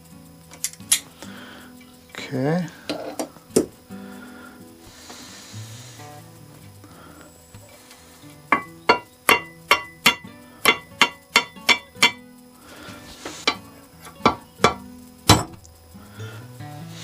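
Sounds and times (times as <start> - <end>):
hammer striking metal: 8.5 - 12.2, 14.2 - 15.6.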